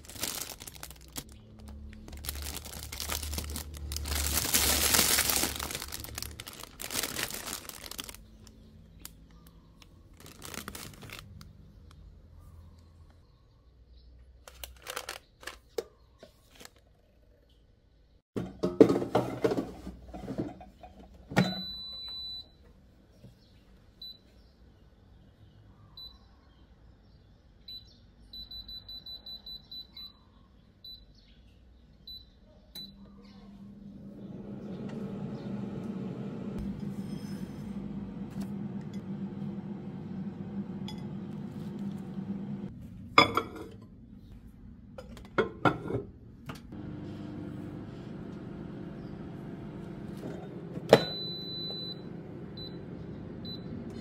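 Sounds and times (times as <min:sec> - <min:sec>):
appliance electric hum: 0:00.0 - 0:12.1, 0:32.7 - 0:54.0
appliance panel beeps: 0:21.4 - 0:22.6, 0:27.7 - 0:30.2, 0:32.1 - 0:33.1, 0:49.8 - 0:54.0.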